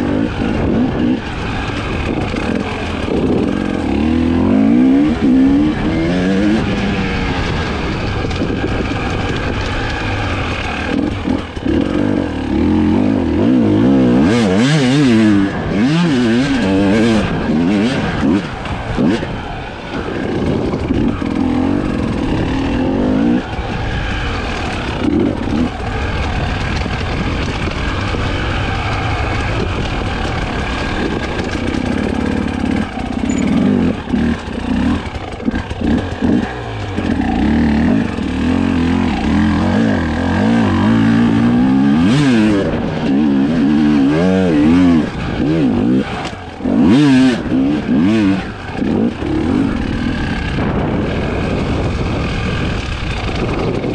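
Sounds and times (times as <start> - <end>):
two-stroke motorcycle engine revving: 0.0 - 53.9.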